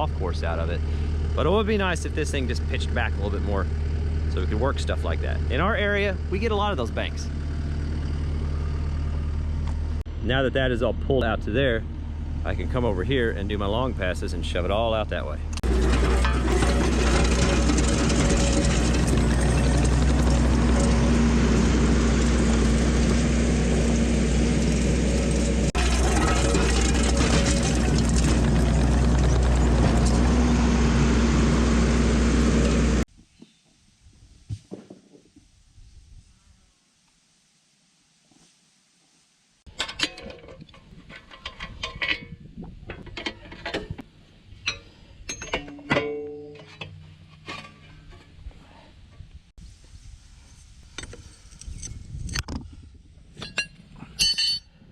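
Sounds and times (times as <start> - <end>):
diesel engine running: 0.0 - 33.1.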